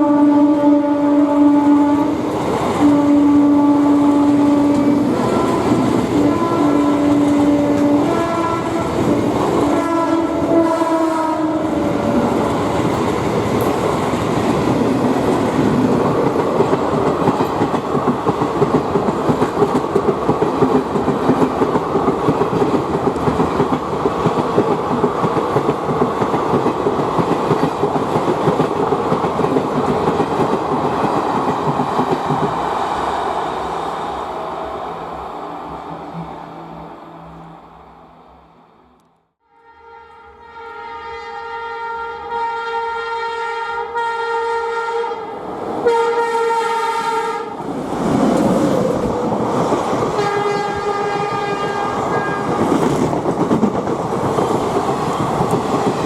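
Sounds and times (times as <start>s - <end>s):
train horn blasts: 0.0s - 2.2s, 2.8s - 12.4s, 39.4s - 47.6s, 50.2s - 52.6s.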